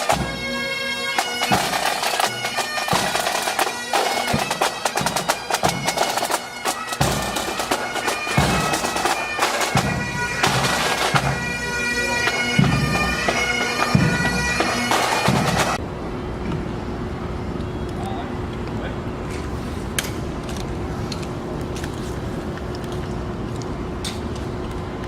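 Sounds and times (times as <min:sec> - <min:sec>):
bagpipe drones: 0:00.0 - 0:15.8
bagpipes playing a melody: 0:00.0 - 0:15.8.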